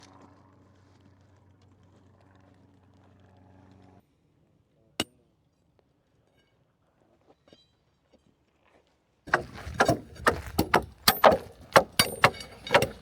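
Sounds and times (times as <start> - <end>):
faint engine hum: 0.0 - 7.0.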